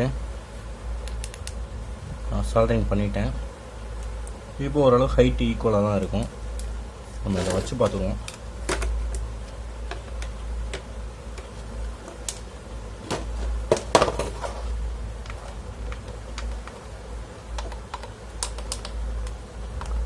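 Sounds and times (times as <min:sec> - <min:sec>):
steady low hum: 0:00.0 - 0:20.0
plastic parts handled: 0:06.0 - 0:20.0.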